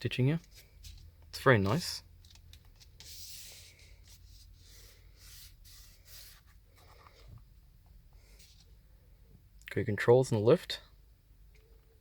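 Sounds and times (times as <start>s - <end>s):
hands rubbing and scraping: 2.8s - 7.3s.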